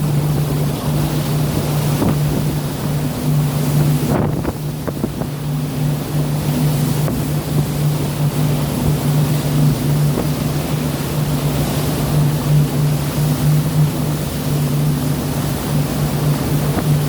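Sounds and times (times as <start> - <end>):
boat motor droning: 0.0 - 17.0
sea wash: 0.0 - 17.0
wind noise on microphone: 0.0 - 17.0.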